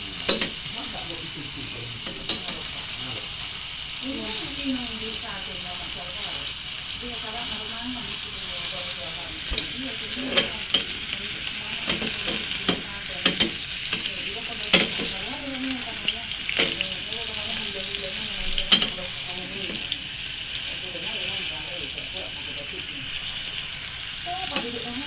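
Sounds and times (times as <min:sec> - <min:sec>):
steak sizzling in a frying pan: 0:00.0 - 0:25.0
utensil clacking against pan: 0:00.2 - 0:01.0, 0:02.0 - 0:02.9, 0:08.7 - 0:20.4, 0:23.9 - 0:25.0.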